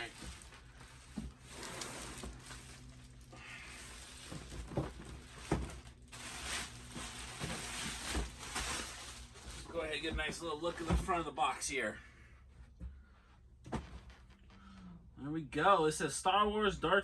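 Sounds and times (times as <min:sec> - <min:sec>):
cardboard packaging rustling: 0:00.0 - 0:11.2
cardboard scraping: 0:00.0 - 0:11.2.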